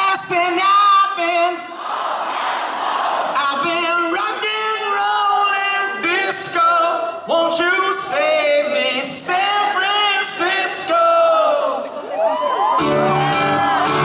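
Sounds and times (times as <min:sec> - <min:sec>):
man singing lead vocal: 0:00.0 - 0:01.8, 0:03.4 - 0:11.9
rock band playing: 0:12.8 - 0:14.0.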